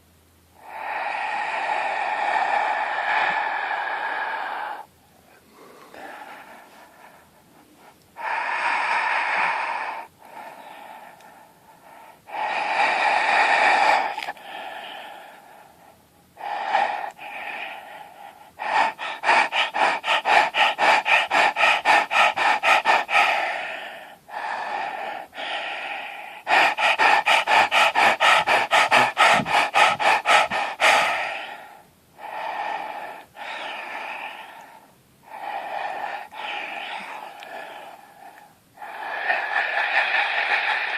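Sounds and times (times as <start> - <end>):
person breathing deeply and rasping: 0.0 - 40.9.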